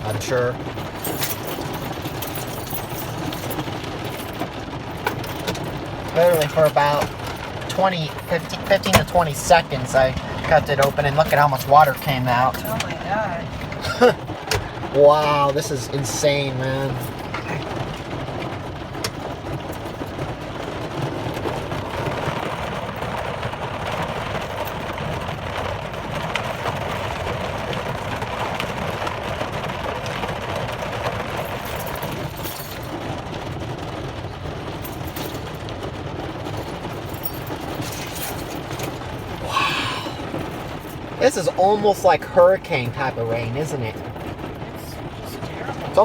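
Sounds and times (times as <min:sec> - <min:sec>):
heavy rain drumming on vehicle: 0:00.0 - 0:46.0.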